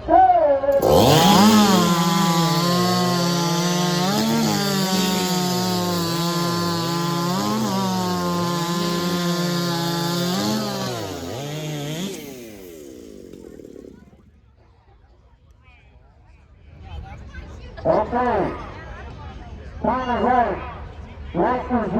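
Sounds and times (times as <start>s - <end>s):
chainsaw cutting log: 0.7s - 14.3s.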